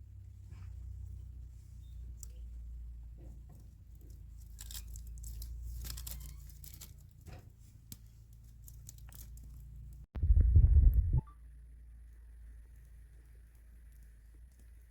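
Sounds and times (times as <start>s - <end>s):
crackling and rustling: 0.0s - 11.0s, 11.7s - 14.9s
steady low rumble: 9.9s - 14.9s.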